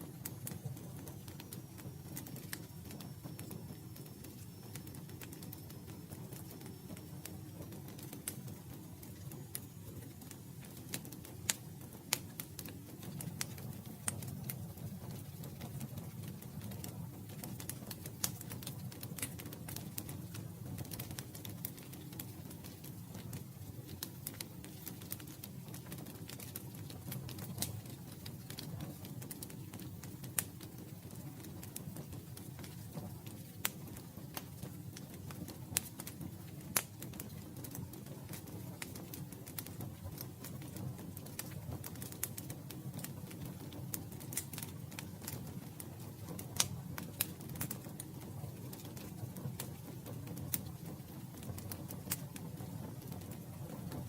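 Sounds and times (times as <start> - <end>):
low rumble of flames: 0.0 - 54.0
wood fire crackling and popping: 0.0 - 54.0.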